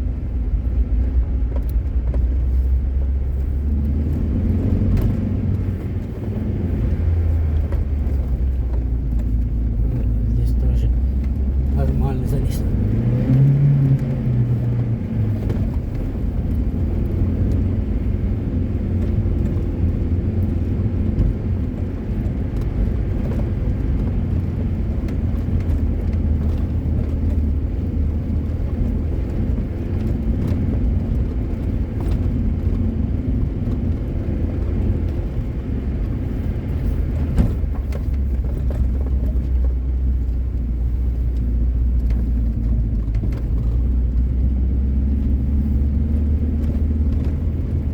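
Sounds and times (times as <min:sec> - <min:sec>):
car engine at low revs: 0:00.0 - 0:47.9
tyre and body rumble: 0:20.7 - 0:47.9.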